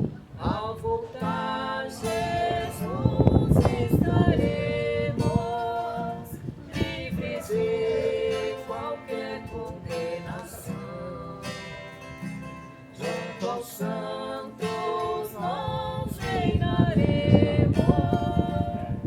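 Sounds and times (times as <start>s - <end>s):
wind buffeting microphone: 0.0s - 10.9s, 15.3s - 19.0s
plucked acoustic guitar: 0.0s - 19.0s.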